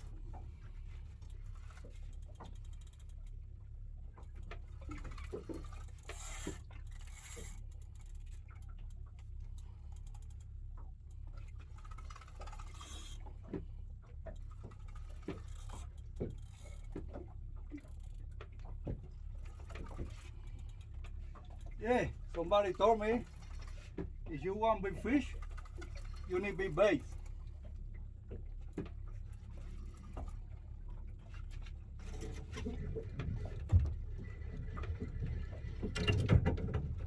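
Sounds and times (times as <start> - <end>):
fishing reel clicks and taps: 6.0 - 8.1.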